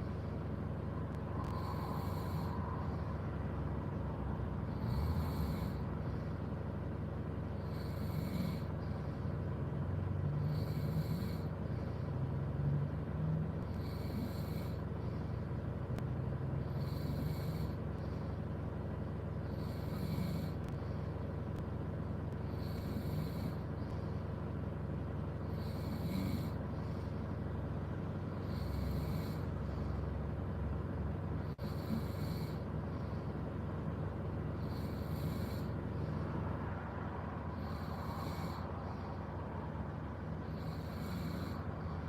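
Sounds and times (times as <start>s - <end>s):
steady low hum: 0.0s - 42.0s
person snoring: 1.4s - 3.2s, 4.6s - 6.0s, 7.6s - 8.7s, 10.3s - 11.5s, 13.7s - 14.8s, 16.7s - 17.8s, 19.5s - 20.7s, 22.5s - 23.6s, 25.5s - 26.6s, 28.4s - 29.5s, 31.5s - 32.6s, 34.6s - 35.8s, 37.6s - 38.7s, 40.4s - 42.0s.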